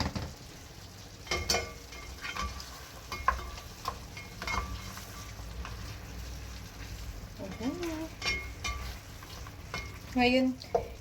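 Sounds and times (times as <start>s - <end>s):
sauce sizzling: 0.0s - 11.0s
utensil scraping a pan: 1.4s - 10.0s.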